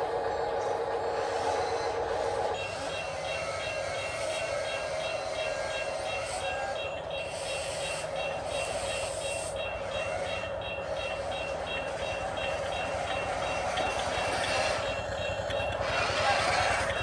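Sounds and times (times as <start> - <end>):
model machinery whirring drone: 0.0 - 17.0.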